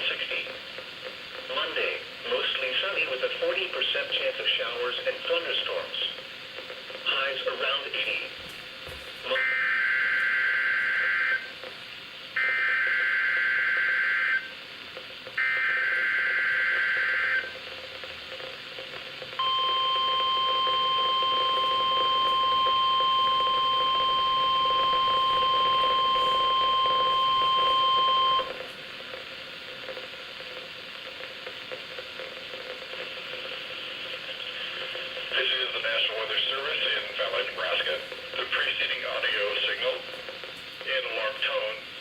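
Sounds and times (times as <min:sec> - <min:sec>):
radio hiss: 0:00.0 - 0:42.0
steady alarm tone: 0:09.3 - 0:11.6, 0:12.4 - 0:14.5, 0:15.4 - 0:17.6, 0:19.4 - 0:28.6.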